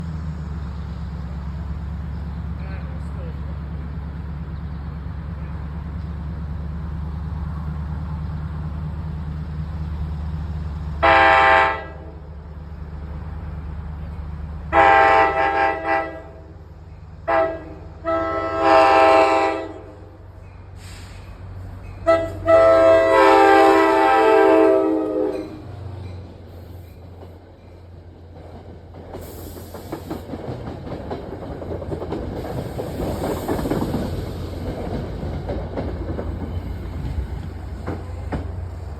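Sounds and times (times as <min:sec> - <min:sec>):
diesel locomotive engine drone: 0:00.0 - 0:38.9
locomotive air horn blasts: 0:11.0 - 0:12.2, 0:14.7 - 0:16.5, 0:17.2 - 0:20.1, 0:22.0 - 0:25.6.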